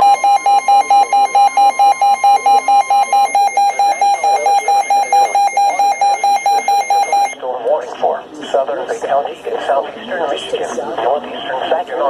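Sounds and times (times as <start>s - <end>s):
alert alarm beeping rapidly: 0.0s - 7.4s
steady warning alarm tone: 0.0s - 7.4s.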